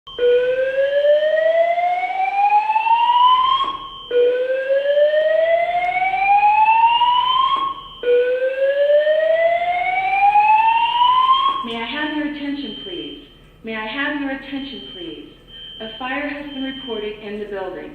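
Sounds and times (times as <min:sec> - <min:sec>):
fire alarm whoop tone: 0:00.1 - 0:11.7.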